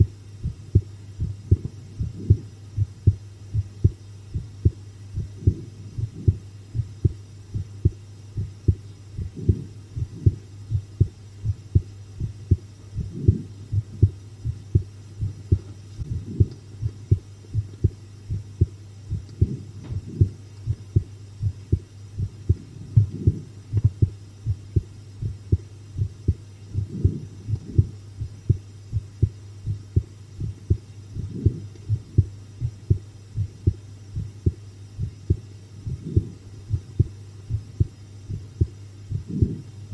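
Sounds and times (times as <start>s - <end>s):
heartbeat thumps: 0.0s - 39.7s
constant low hum: 0.0s - 39.9s.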